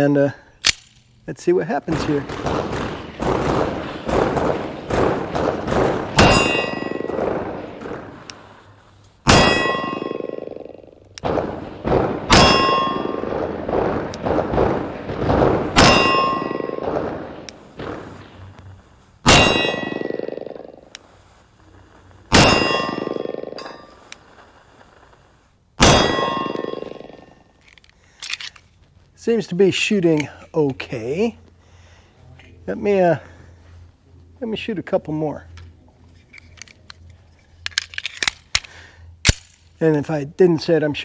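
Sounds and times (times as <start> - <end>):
bullets clanging on steel plate: 2.7 - 8.4, 9.3 - 14.6.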